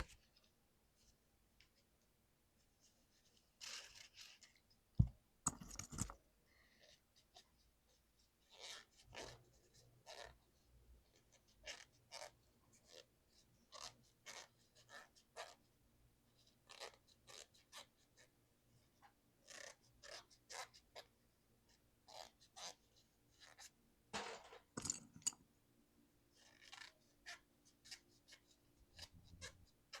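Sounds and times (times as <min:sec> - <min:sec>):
scraping keyboard: 0:05.5 - 0:06.2
scrubbing a mechanical keyboard: 0:26.3 - 0:30.0.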